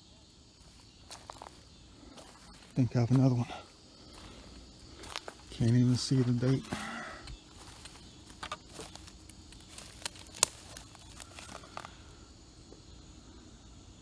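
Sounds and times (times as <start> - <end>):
background hiss: 0.0 - 14.0
light rustling: 3.4 - 12.0.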